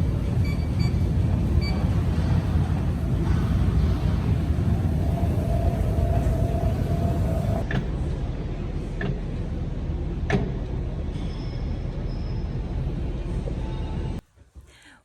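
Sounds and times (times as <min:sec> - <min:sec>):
vehicle rumble in motion: 0:00.0 - 0:09.3.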